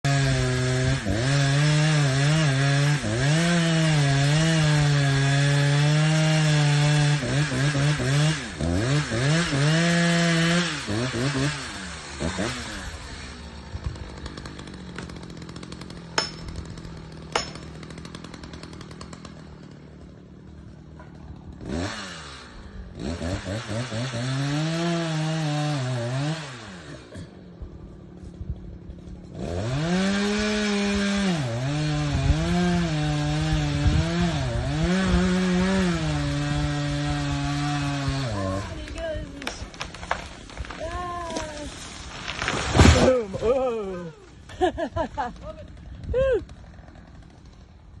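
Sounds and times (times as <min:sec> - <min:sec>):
chainsaw cutting into tree: 0:00.0 - 0:48.0
sharp cracks: 0:38.8 - 0:43.5.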